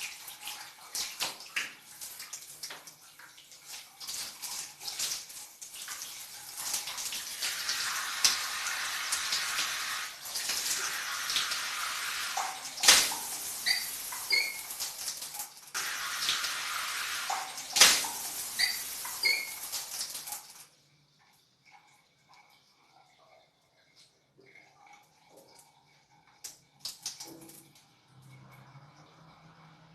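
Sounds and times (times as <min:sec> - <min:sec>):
shower water running: 0:00.0 - 0:29.9
short high squeaks: 0:13.6 - 0:14.8, 0:18.6 - 0:19.7.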